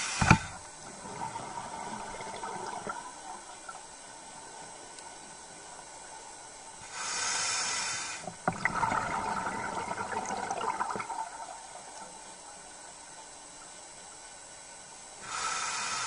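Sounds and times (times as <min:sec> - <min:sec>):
hiss: 0:00.0 - 0:00.6, 0:06.8 - 0:08.4, 0:15.2 - 0:16.0
water bubbles gurgling: 0:00.8 - 0:04.0, 0:08.3 - 0:12.5.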